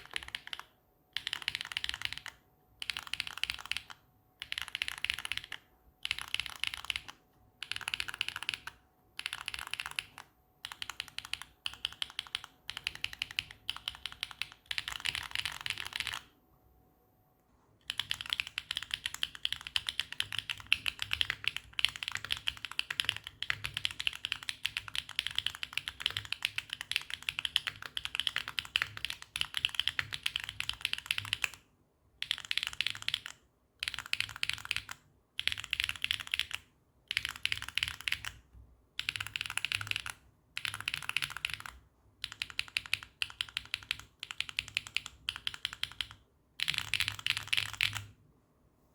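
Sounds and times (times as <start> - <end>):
mechanical keyboard typing: 0.0 - 16.3, 17.8 - 31.6, 32.2 - 48.1.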